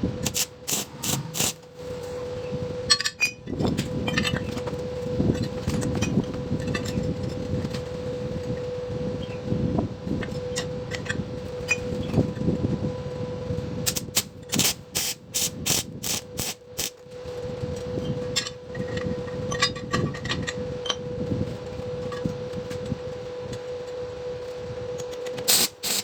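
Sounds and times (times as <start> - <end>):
steady hum: 0.0 - 2.9, 13.3 - 17.6, 24.7 - 26.0
quick metal strokes: 0.2 - 1.6.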